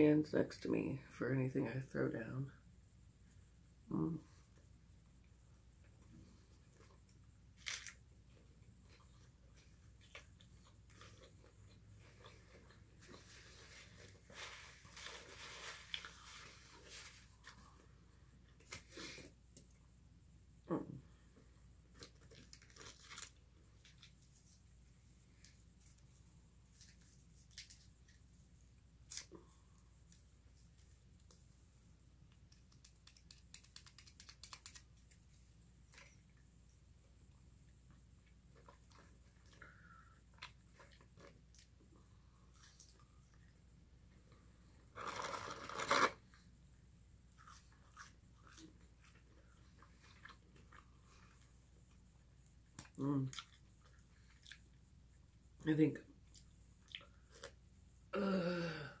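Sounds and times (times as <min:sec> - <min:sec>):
person chewing: 0:07.7 - 0:14.2, 0:47.3 - 0:51.5, 0:52.7 - 0:54.8, 0:56.3 - 0:57.6.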